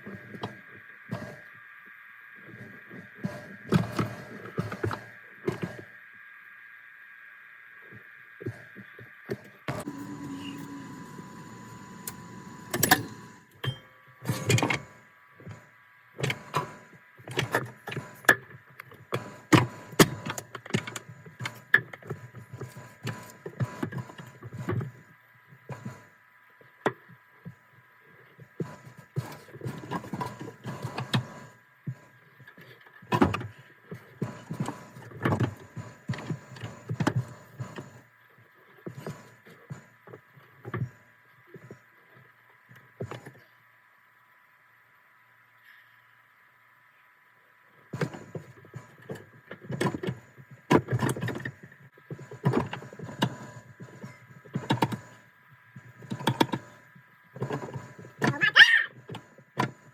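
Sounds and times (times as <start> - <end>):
high electrical hum: 0.0 - 21.4.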